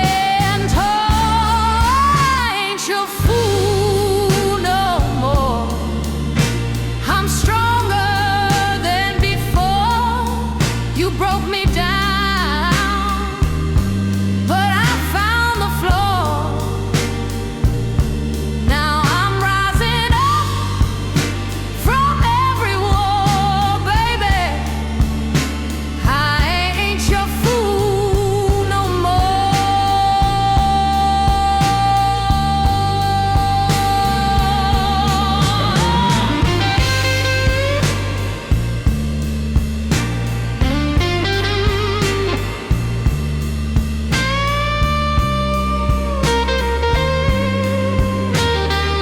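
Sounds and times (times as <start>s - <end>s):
wordless vocal with vibrato: 0.0s - 39.7s
bass: 0.0s - 49.0s
slow soul blues ballad: 0.0s - 49.0s
drum beat: 17.0s - 28.8s, 34.0s - 48.8s.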